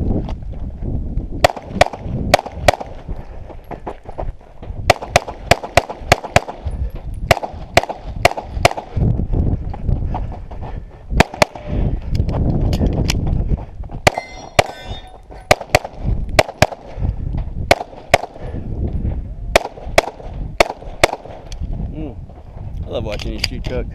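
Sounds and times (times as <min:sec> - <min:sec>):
pistol shots: 0:01.4 - 0:03.0, 0:04.9 - 0:06.7, 0:07.3 - 0:08.9, 0:14.1 - 0:14.8, 0:15.4 - 0:16.9, 0:17.7 - 0:18.4, 0:19.5 - 0:21.5.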